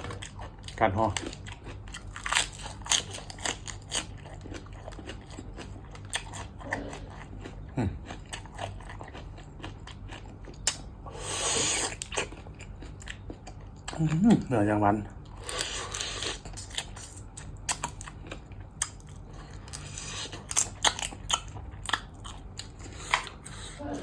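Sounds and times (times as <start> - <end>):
crunchy bites and chewing: 0.0 - 14.5, 15.3 - 23.5.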